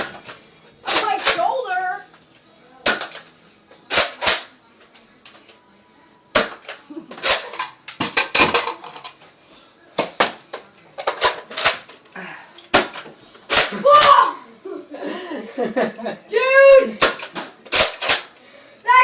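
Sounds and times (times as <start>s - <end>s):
toy blasters firing: 0.8s - 2.0s, 3.9s - 4.9s, 12.7s - 14.4s.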